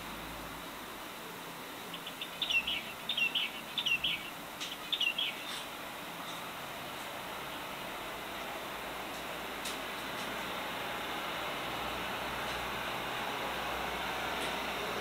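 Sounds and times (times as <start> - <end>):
steady hiss: 0.0 - 15.0
bird chirping: 1.8 - 6.5.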